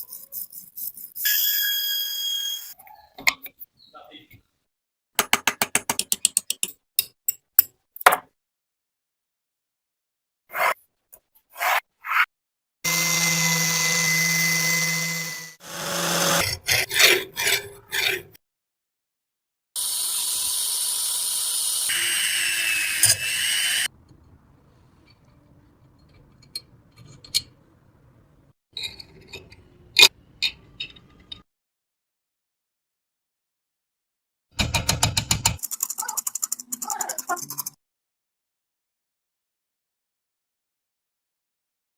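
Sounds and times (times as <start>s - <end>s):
power tool running: 12.9s - 16.6s, 19.8s - 28.2s.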